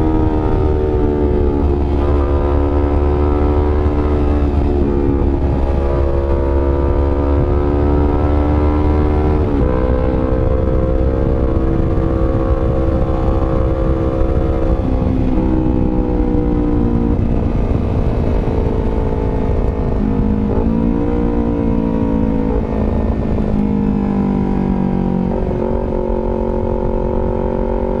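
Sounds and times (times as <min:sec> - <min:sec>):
motorcycle engine revving: 0:00.0 - 0:28.0.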